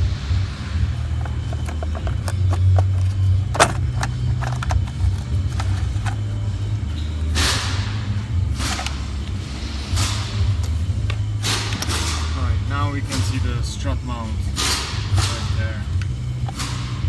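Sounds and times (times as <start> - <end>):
plastic trim clicks and knocks: 1.2 - 6.2.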